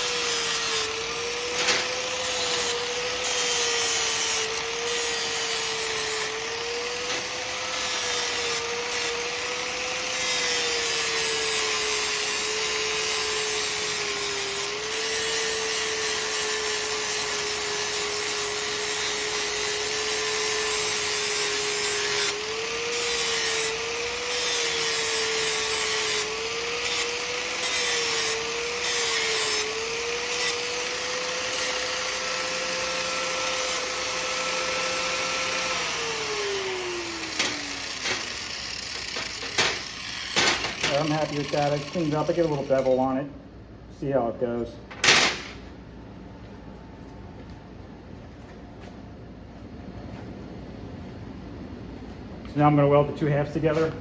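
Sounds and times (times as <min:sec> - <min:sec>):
electric grinder grinding steel: 0:00.0 - 0:43.1.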